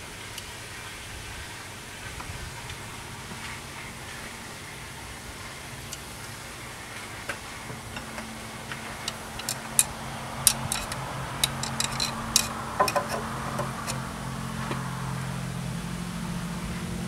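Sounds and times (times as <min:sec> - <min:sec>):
steady low hum: 0:00.0 - 0:17.0
metallic clicks and clinks: 0:08.0 - 0:14.0.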